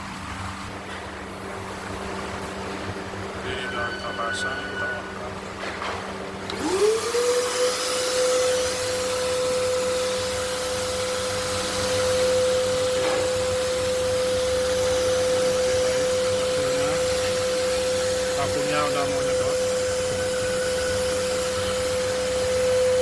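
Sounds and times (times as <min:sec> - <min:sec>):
vacuum cleaner motor whining: 0:06.5 - 0:23.0.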